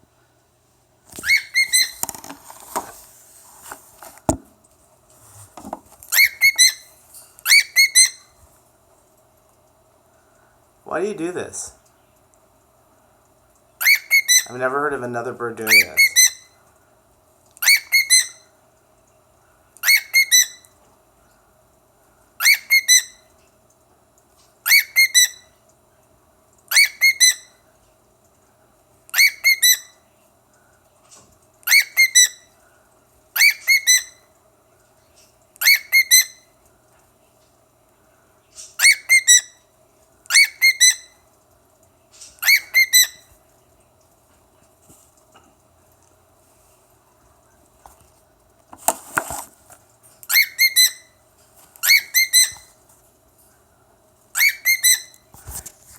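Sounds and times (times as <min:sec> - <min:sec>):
cockatiel shrill whistled calls: 0:01.2 - 0:02.0, 0:06.1 - 0:08.4, 0:13.8 - 0:14.5, 0:15.7 - 0:16.6, 0:17.6 - 0:18.5, 0:19.8 - 0:20.7, 0:22.4 - 0:23.2, 0:24.7 - 0:25.5, 0:26.7 - 0:27.6, 0:29.1 - 0:30.0, 0:31.7 - 0:32.5, 0:33.4 - 0:34.2, 0:35.6 - 0:36.4, 0:38.8 - 0:39.6, 0:40.3 - 0:41.2, 0:42.4 - 0:43.3, 0:50.3 - 0:51.2, 0:51.8 - 0:52.7, 0:54.4 - 0:55.2.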